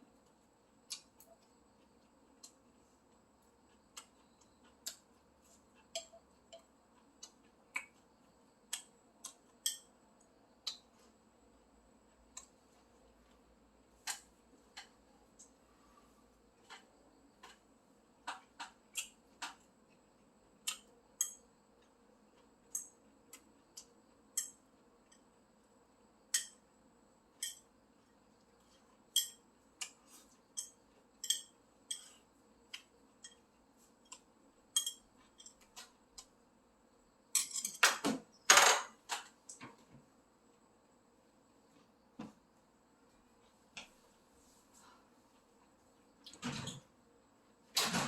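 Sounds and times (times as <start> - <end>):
utensils tapping plates and bowls: 34.8 - 35.6
tableware clatter: 37.4 - 39.0.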